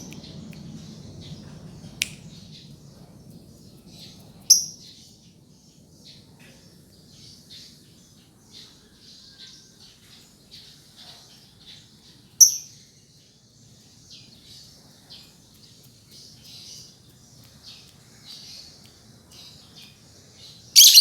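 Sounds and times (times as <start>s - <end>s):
lovebird chattering chirps: 4.0s - 4.8s, 20.7s - 21.0s
lovebird shrieks: 20.8s - 21.0s.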